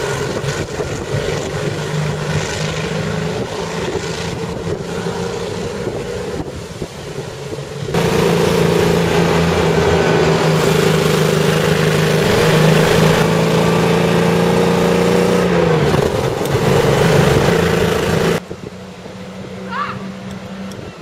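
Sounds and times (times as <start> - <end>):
engine misfiring at raised revs: 8.0 - 18.4.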